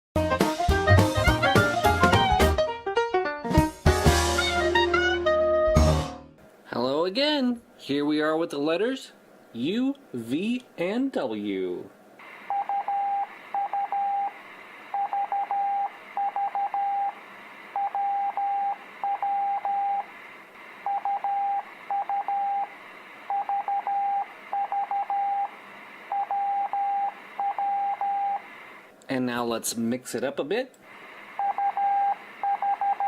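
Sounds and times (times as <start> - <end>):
morse code beeps: 12.5 - 14.3, 15.0 - 17.2, 17.8 - 20.0, 20.9 - 22.7, 23.3 - 25.5, 26.1 - 28.4, 31.4 - 33.0.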